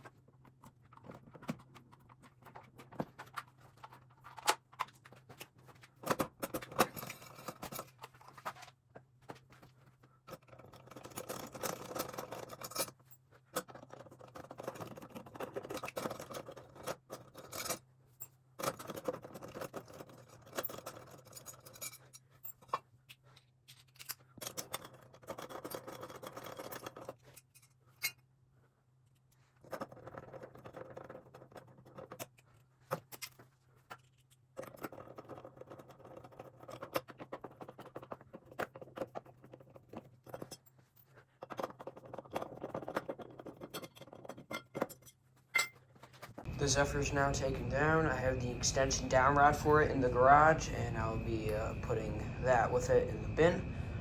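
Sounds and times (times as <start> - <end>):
clicks and knocks of parts: 0.0 - 28.3, 29.0 - 46.5
faint low steady hum: 46.5 - 54.0.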